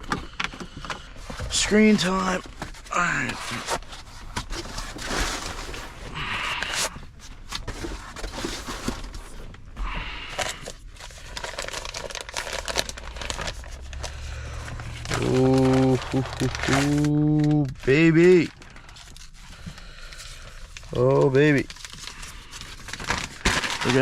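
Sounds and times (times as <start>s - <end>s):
plastic packaging crinkling: 0.0s - 24.0s.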